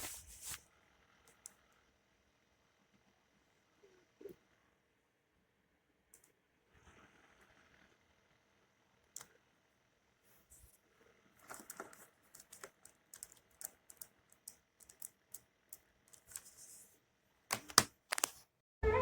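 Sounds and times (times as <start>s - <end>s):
keyboard key clicks: 17.5s - 18.3s.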